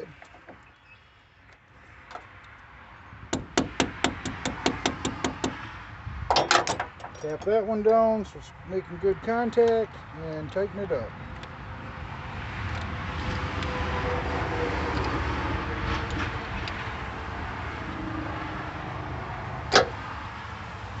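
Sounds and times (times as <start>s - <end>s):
vehicle passing: 11.6s - 21.0s.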